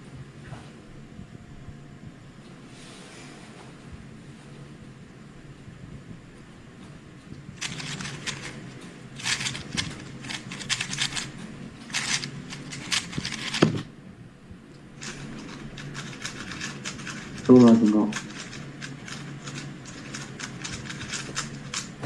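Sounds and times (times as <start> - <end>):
rapid plastic cube clicking: 7.6 - 13.9, 15.0 - 22.0.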